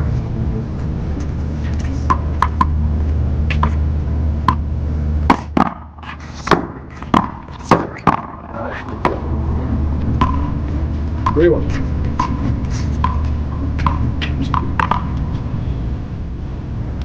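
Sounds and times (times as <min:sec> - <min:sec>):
low rumble: 0:00.0 - 0:17.0
paddles smacking rubber ball: 0:02.1 - 0:02.8, 0:05.3 - 0:09.2, 0:13.0 - 0:15.2.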